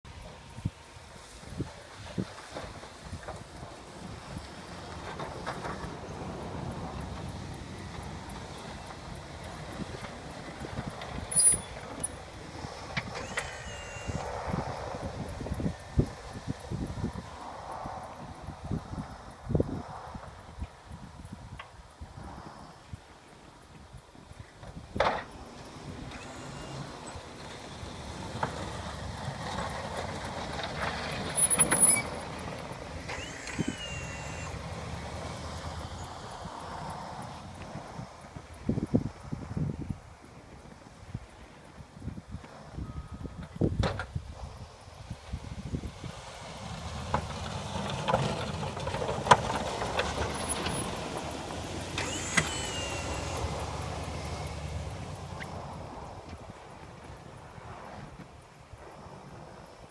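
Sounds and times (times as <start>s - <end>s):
pickup engine rumbling: 0.1s - 21.4s, 24.2s - 41.7s, 42.4s - 59.7s
pickup engine running: 1.7s - 16.8s, 46.0s - 57.8s
short squeal: 13.2s - 14.4s, 31.4s - 32.2s, 33.1s - 34.6s, 52.0s - 53.6s.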